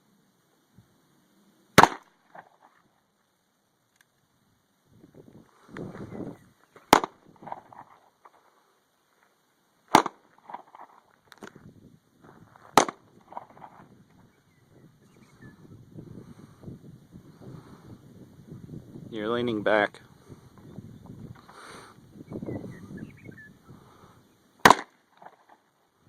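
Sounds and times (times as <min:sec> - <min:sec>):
handgun shots: 0:01.8 - 0:02.1, 0:06.9 - 0:07.2, 0:09.9 - 0:10.2, 0:12.8 - 0:13.0, 0:24.6 - 0:25.0.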